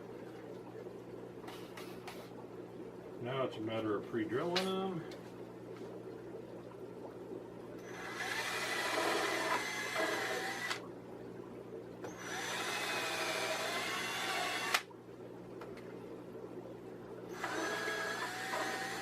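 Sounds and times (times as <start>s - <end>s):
power drill boring into wood: 7.9s - 10.8s, 12.1s - 14.9s, 17.4s - 19.0s.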